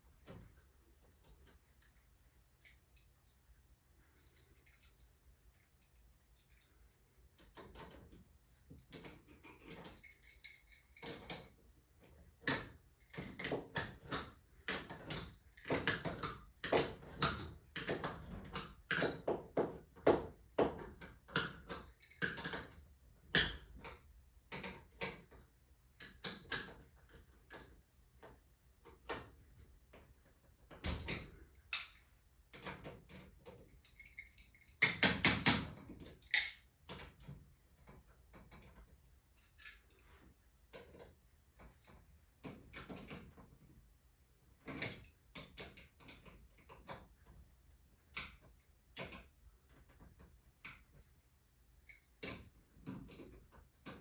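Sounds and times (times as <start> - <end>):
metal tools clinking: 4.2 - 7.0, 33.7 - 35.5.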